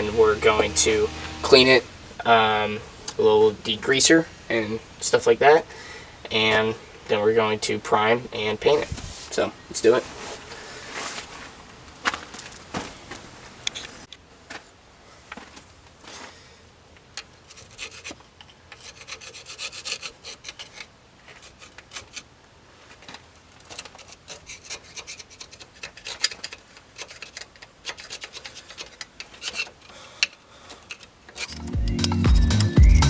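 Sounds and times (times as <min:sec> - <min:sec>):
wire brush scrubbing metal: 0:31.5 - 0:33.0.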